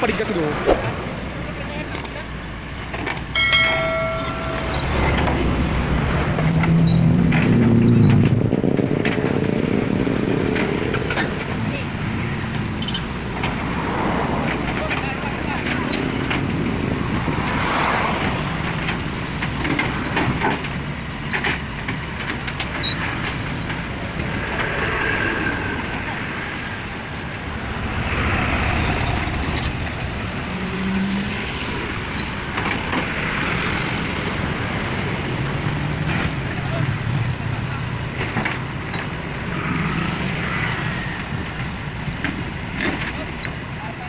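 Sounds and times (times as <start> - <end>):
diesel engine running: 0.0 - 44.0
sharp metal clanks: 3.4 - 5.8.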